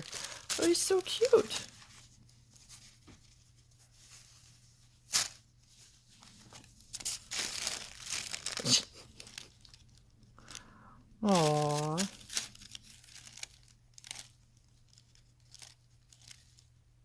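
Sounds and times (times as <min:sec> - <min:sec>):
packaging ripping: 0:00.0 - 0:01.7, 0:06.9 - 0:10.6, 0:11.2 - 0:16.6
packaging crinkling: 0:00.0 - 0:16.8.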